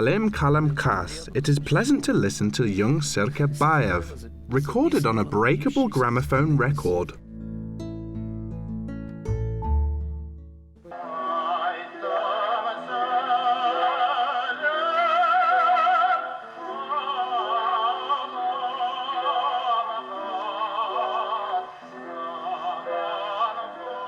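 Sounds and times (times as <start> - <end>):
instrumental accompaniment: 0.2 - 11.0
singer with wide vibrato: 10.9 - 24.0.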